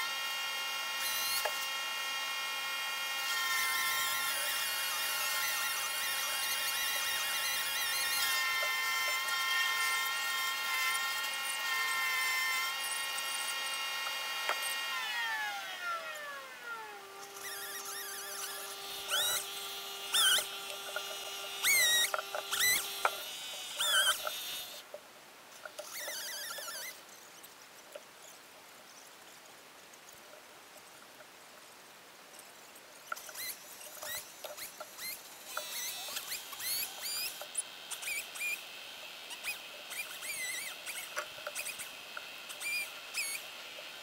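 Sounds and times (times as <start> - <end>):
motor high whine: 0.0 - 24.8, 33.2 - 44.0
high chirping squeaks: 6.2 - 10.0, 17.2 - 23.2, 23.8 - 24.8, 25.8 - 27.5, 33.1 - 38.6, 39.3 - 41.9, 42.5 - 43.5.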